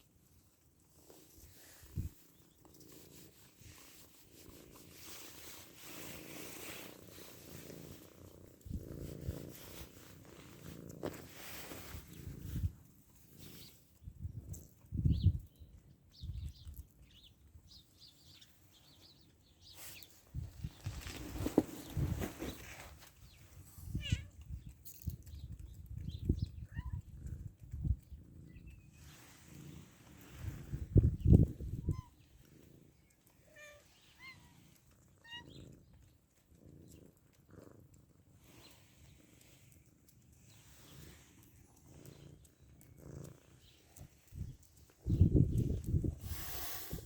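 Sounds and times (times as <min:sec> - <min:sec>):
cat purring: 0:00.9 - 0:13.8, 0:26.0 - 0:33.2, 0:34.4 - 0:47.0
small birds chirping: 0:00.9 - 0:47.0
cat high chirps: 0:23.9 - 0:24.4, 0:26.6 - 0:27.1, 0:31.7 - 0:32.2.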